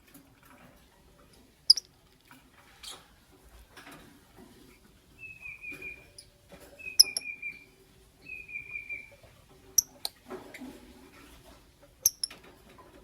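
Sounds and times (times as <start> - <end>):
lovebirds calling: 5.2 - 10.2, 12.0 - 12.4.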